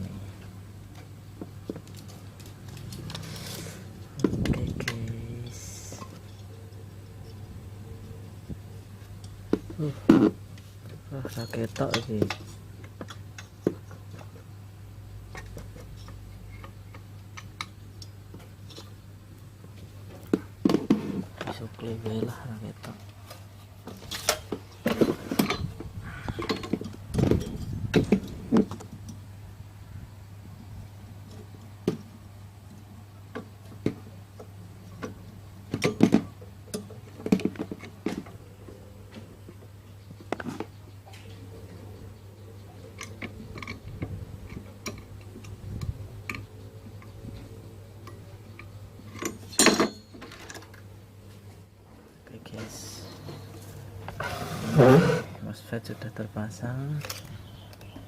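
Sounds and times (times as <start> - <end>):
steady low hum: 0.0 - 58.0
tools and parts clicking: 22.8 - 29.2, 42.7 - 50.9.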